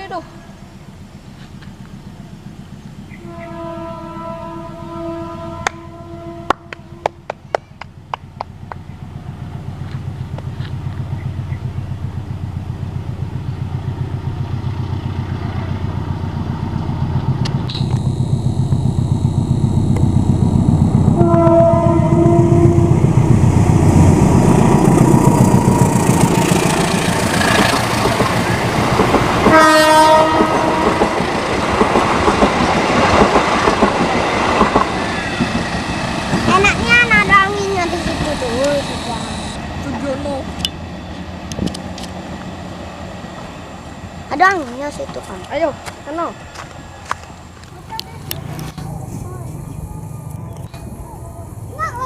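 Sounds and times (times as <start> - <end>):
diesel locomotive rumble: 0.0 - 52.0
locomotive horn blasts: 3.2 - 7.2, 17.7 - 23.2, 29.4 - 31.2.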